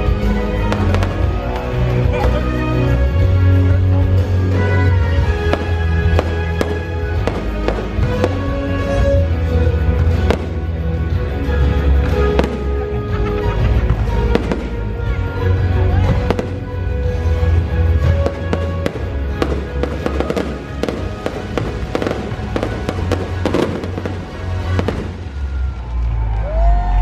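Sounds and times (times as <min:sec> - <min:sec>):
fireworks bursting and crackling: 0:00.0 - 0:02.5, 0:04.9 - 0:26.3
music playing: 0:00.0 - 0:27.0.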